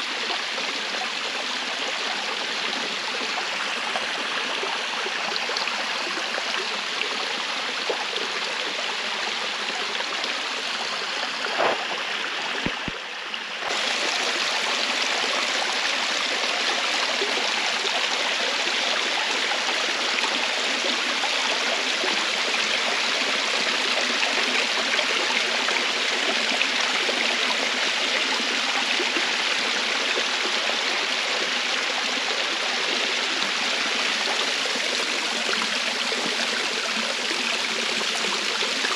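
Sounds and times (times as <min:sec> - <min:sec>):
water rushing: 0:09.5 - 0:38.9.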